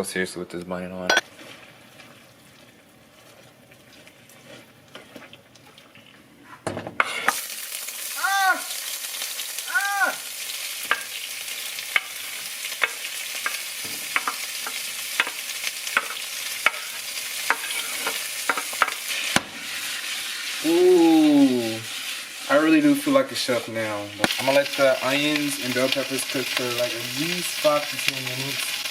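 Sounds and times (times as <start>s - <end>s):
vegetables sizzling in a pan: 1.2s - 5.3s, 7.0s - 28.9s
utensil tapping against a pan: 12.8s - 15.4s.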